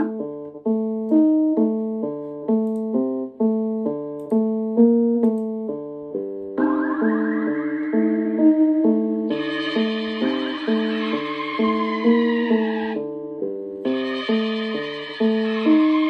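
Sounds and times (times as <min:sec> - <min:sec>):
electric piano chords: 0:00.0 - 0:16.0
bright buzzy synth layer: 0:06.6 - 0:11.3.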